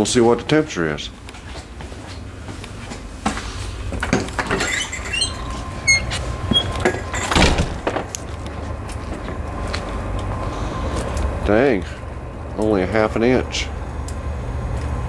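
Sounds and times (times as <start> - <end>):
low steady hum: 0.0 - 15.0
short high squeaks: 4.5 - 7.4.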